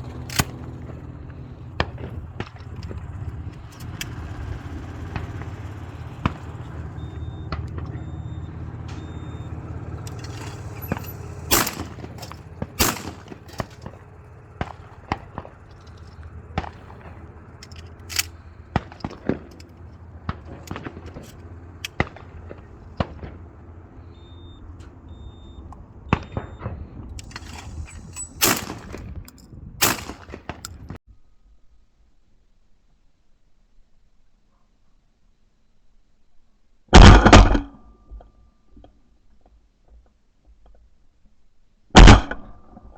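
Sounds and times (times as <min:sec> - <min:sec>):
faint shots: 0:00.0 - 0:29.2, 0:29.8 - 0:30.9
clicks: 0:00.0 - 0:31.0
low steady rumble: 0:00.0 - 0:31.0
loud shotgun shots: 0:03.7 - 0:23.7, 0:27.2 - 0:29.1, 0:29.8 - 0:30.7.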